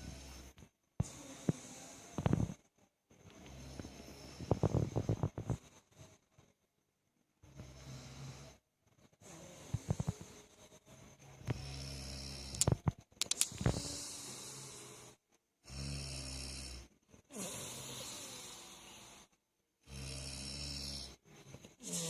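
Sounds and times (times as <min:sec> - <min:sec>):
sharp clicks: 0:12.5 - 0:13.7
person snoring heavily: 0:19.9 - 0:21.2, 0:21.8 - 0:22.0.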